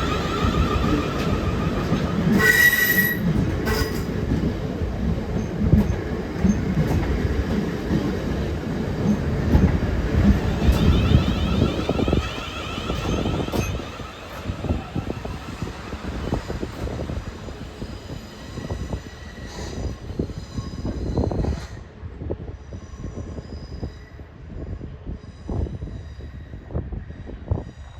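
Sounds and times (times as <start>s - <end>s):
electric train running on rails: 0.0s - 27.9s
wind buffeting microphone: 0.0s - 27.9s.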